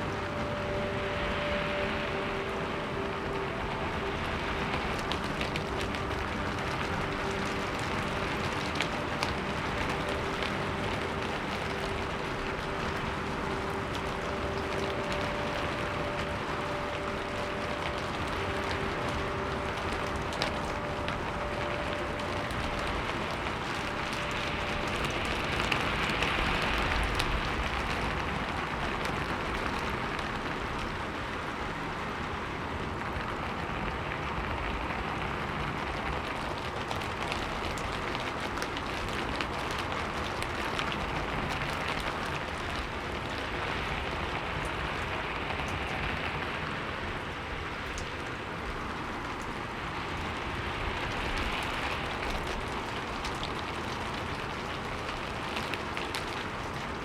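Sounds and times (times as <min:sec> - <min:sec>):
steady rain falling: 0:00.0 - 0:57.0.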